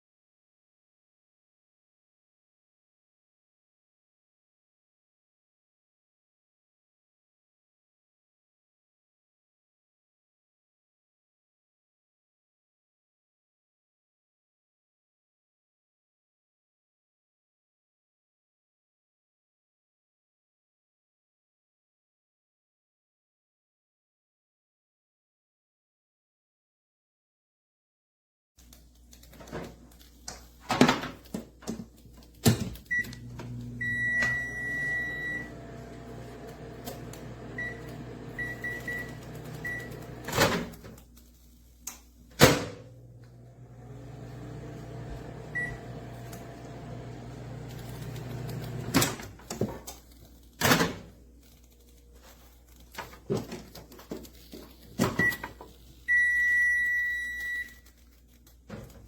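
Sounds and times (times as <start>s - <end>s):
microwave running hum: 30.3s - 41.1s, 41.9s - 51.3s
microwave keypad beeps: 32.9s - 35.9s, 37.4s - 40.3s, 45.4s - 46.2s, 55.2s - 57.8s.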